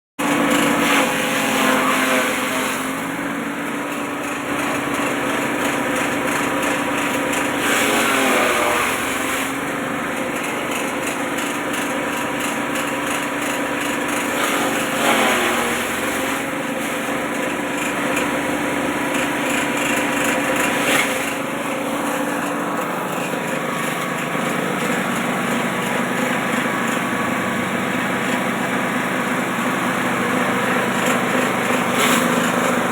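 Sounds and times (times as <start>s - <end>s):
chaff cutter engine running: 0.2s - 32.9s.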